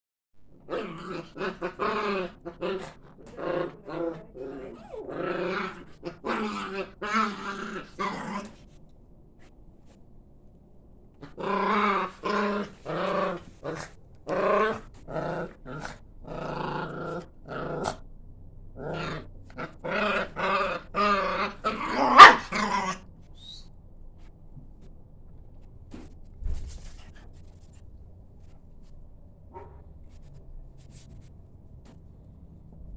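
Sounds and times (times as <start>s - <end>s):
dogs growling and snarling: 0.5s - 8.6s, 11.2s - 18.1s, 18.7s - 23.1s
dog bark or yelp: 22.1s - 22.5s.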